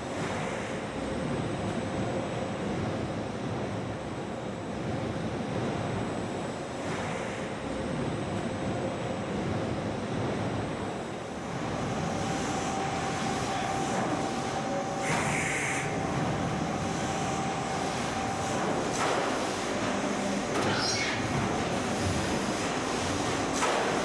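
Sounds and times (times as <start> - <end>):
continuous hum tone: 7.5 - 24.0.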